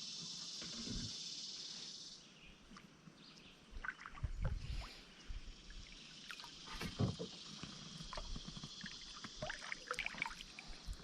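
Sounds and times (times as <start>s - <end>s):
high insect chorus: 0.0s - 11.0s
knocks and thumps in boat: 6.7s - 9.5s.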